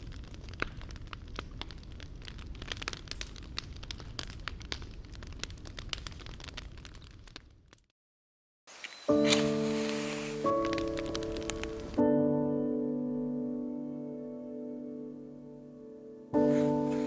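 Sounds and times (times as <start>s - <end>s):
wood fire crackling: 0.0s - 7.9s, 8.7s - 12.3s, 16.3s - 17.0s.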